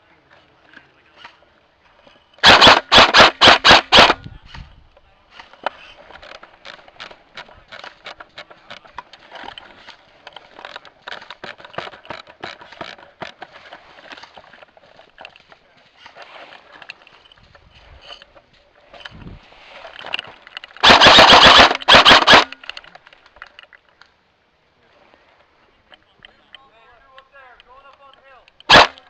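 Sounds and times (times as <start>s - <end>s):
airsoft gun shots: 2.4s - 4.2s, 20.8s - 22.5s, 28.7s - 29.0s.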